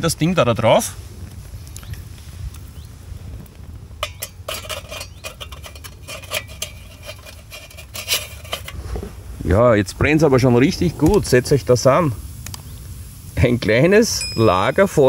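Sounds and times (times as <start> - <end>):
metal stove clinking and rattling: 4.0 - 8.8.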